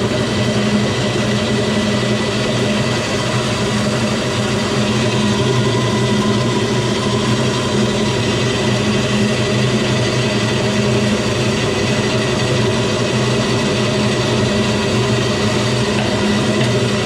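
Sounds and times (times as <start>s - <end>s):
mill machine droning: 0.0s - 17.0s.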